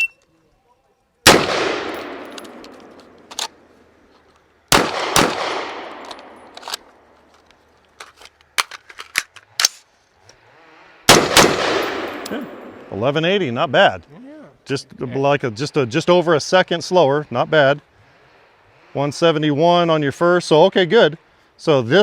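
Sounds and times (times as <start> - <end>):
gunshots: 1.2 - 3.6, 4.7 - 6.7, 11.1 - 12.9.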